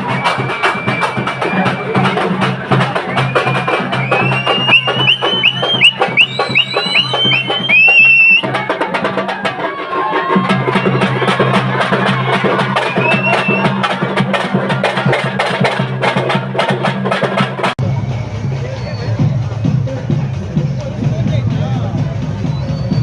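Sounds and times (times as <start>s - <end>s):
rapid drum strikes: 0.0s - 17.8s.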